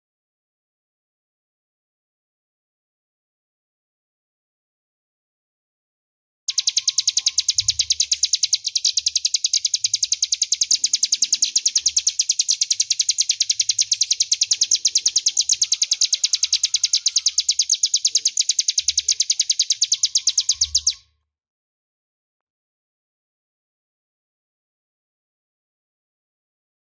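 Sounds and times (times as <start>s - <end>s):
bird chirping rapidly: 6.5s - 21.1s.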